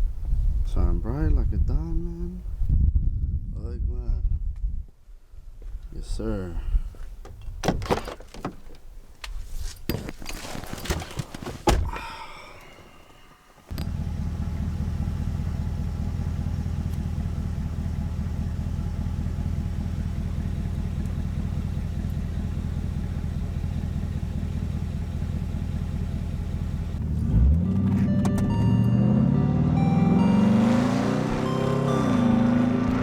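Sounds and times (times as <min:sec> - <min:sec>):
car engine idling and revving: 0:13.7 - 0:33.0
music: 0:27.8 - 0:32.4.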